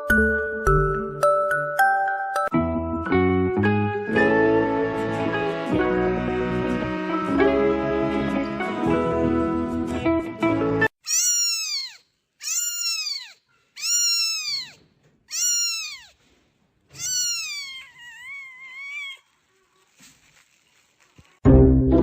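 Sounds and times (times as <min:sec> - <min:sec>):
cat meowing: 0:11.0 - 0:16.2, 0:16.9 - 0:19.4.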